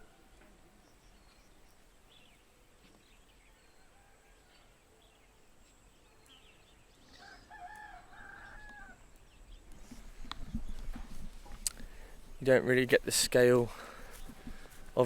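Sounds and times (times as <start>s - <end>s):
faint outdoor ambience: 0.0s - 15.0s
rooster crowing: 7.2s - 9.0s.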